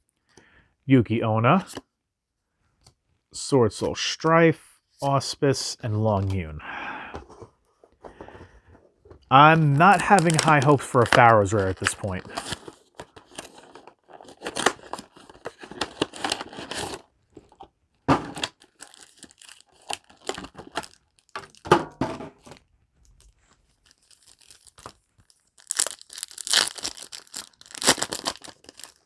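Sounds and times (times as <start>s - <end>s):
foil wrappers crinkling and tearing: 9.3s - 21.6s, 23.4s - 29.0s.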